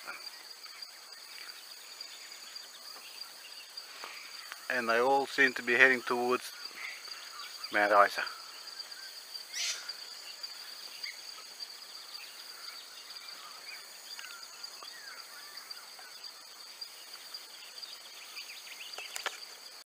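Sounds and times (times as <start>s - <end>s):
high insect drone: 0.0s - 19.8s.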